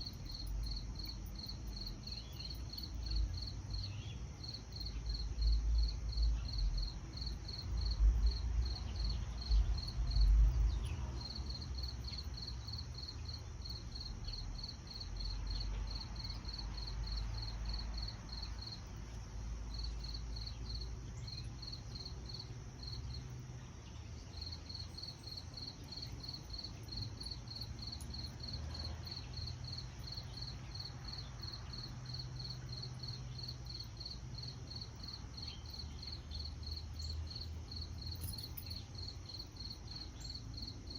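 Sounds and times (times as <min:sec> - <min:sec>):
cricket chirping: 0:00.0 - 0:40.9
high insect drone: 0:00.0 - 0:40.9.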